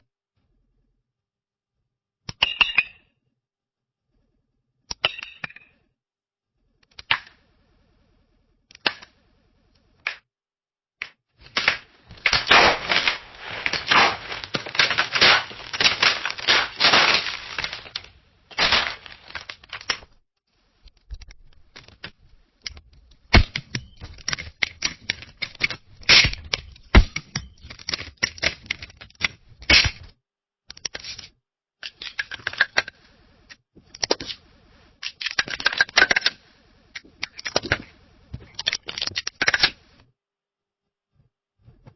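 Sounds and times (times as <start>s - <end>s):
camera flashbulbs popping: 11.5s - 20.0s.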